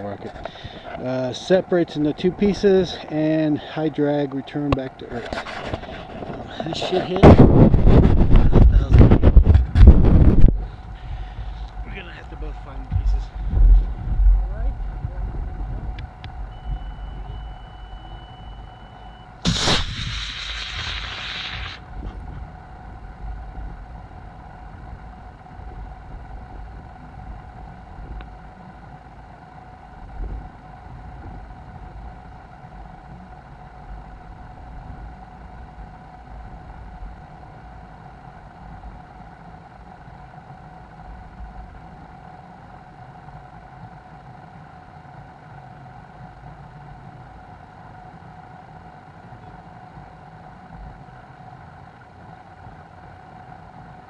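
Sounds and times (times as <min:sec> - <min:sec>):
faint steady hum: 0:00.0 - 0:54.0
wind noise: 0:05.7 - 0:11.6
steady high beep: 0:16.5 - 0:19.4
rocket motor hiss: 0:19.4 - 0:22.4.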